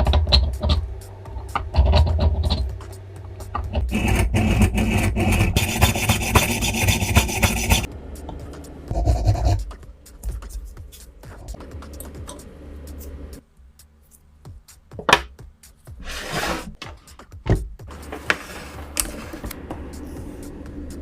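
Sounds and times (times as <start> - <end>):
sharp clicks and knocks: 0.0 - 3.9
hand tool scraping workpiece: 3.6 - 7.9, 16.0 - 16.8.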